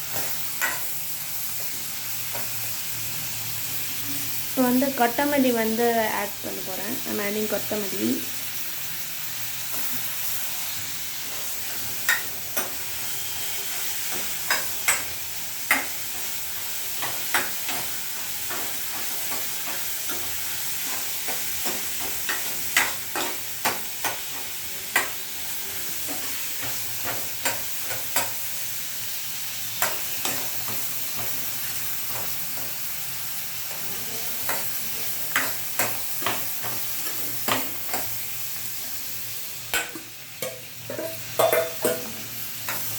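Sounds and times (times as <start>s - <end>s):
onions sizzling in hot oil: 0.0s - 42.9s
spoon scraping a pan: 39.8s - 42.9s.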